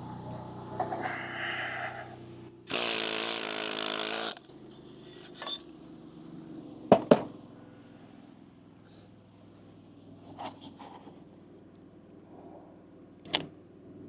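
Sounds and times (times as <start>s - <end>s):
welder hum: 0.0s - 4.4s.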